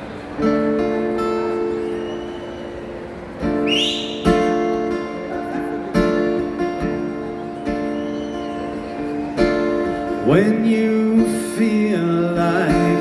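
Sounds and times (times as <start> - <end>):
acoustic guitar chords ringing: 0.0 - 13.0
short high call: 3.6 - 4.9.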